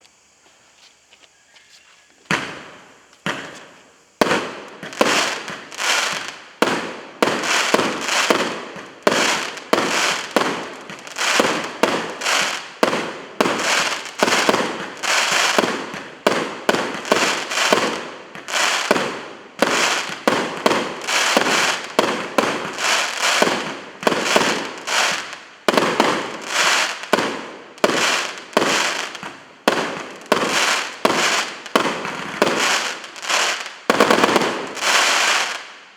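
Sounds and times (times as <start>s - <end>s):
fireworks bangs: 2.2s - 35.7s.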